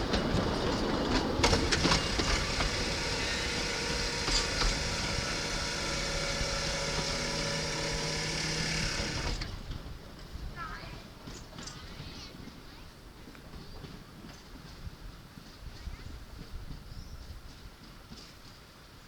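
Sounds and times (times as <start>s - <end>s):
steam train rumbling: 0.0s - 19.0s.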